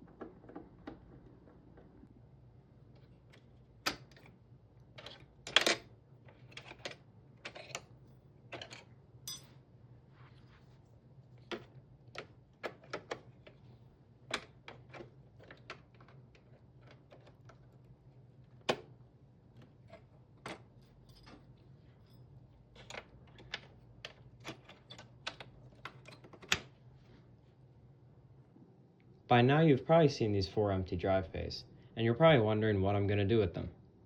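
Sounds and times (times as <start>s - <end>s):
server components clicking and knocking: 0.0s - 2.1s
faint hum: 0.0s - 34.0s.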